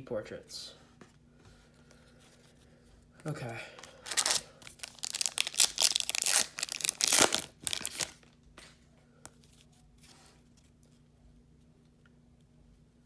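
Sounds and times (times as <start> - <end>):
foil pack tearing open: 3.8 - 8.2.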